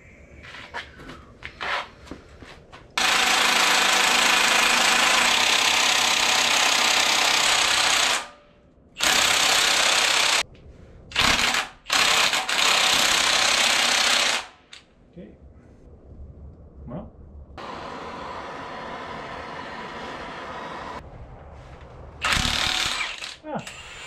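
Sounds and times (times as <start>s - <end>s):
impact wrench bursts: 9.0s - 10.4s, 11.1s - 14.6s, 22.2s - 24.0s.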